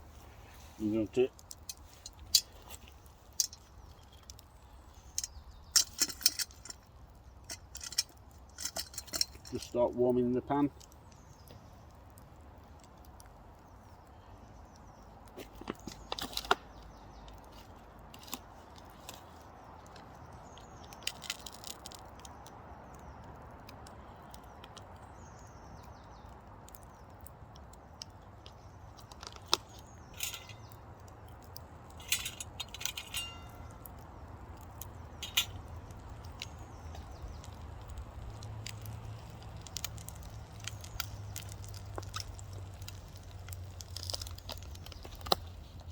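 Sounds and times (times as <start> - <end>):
campfire embers crackling: 0.0 - 45.9
sharp pops and clicks: 1.2 - 9.7, 10.6 - 45.9.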